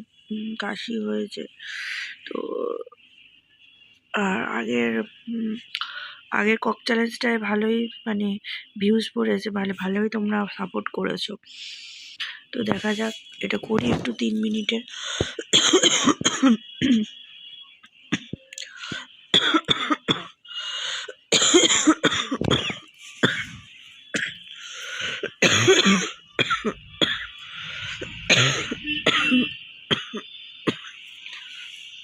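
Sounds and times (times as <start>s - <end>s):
woman coughing: 14.9s - 17.1s, 18.1s - 20.4s, 21.0s - 24.4s, 25.0s - 27.4s, 28.0s - 31.0s.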